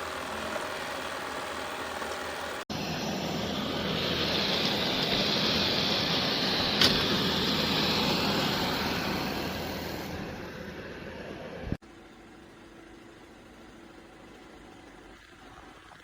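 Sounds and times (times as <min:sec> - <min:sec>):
robot vacuum suction motor: 0:00.0 - 0:11.5.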